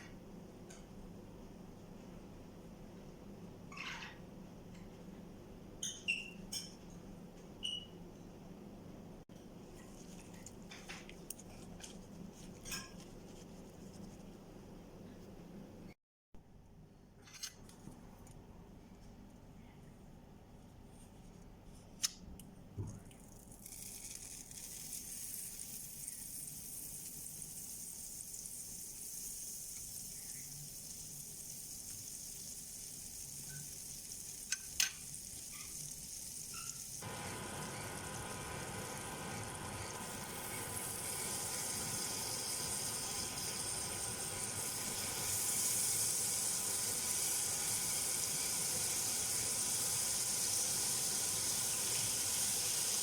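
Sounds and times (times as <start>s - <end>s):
food sizzling in a pan: 23.6s - 53.0s.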